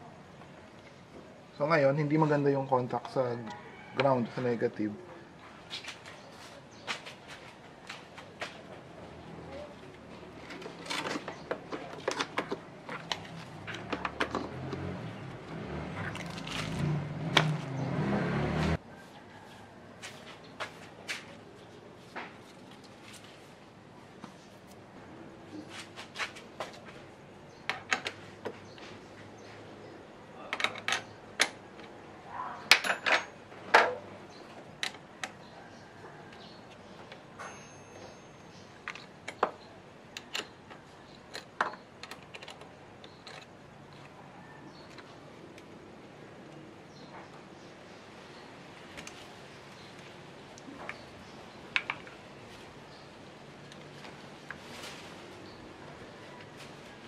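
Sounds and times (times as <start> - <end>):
metal tools clinking: 32.7 - 33.4, 37.4 - 39.0.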